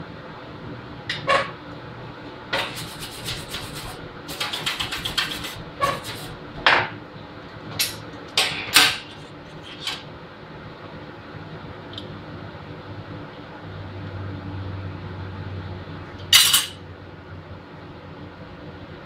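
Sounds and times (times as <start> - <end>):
steady hum: 0.0 - 19.0
metal scraping strokes: 2.6 - 6.4.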